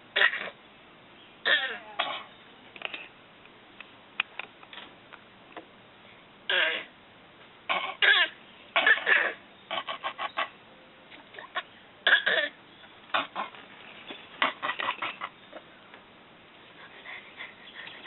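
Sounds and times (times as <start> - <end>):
baby fake coughing: 0.2 - 0.6, 1.5 - 2.3, 6.5 - 6.9, 7.7 - 9.4, 11.4 - 12.6.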